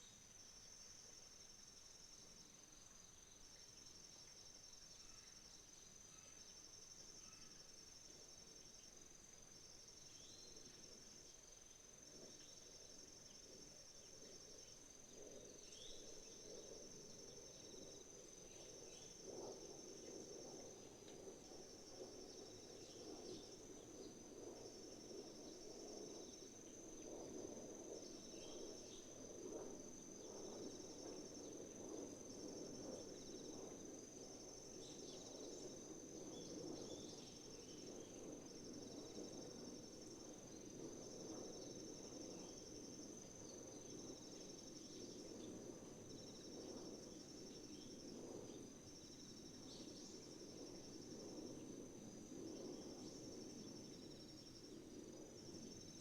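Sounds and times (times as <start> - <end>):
crickets trilling: 0.0 - 56.0
insect chirping: 0.0 - 56.0
faint bird chirps: 4.8 - 6.6, 7.2 - 7.8.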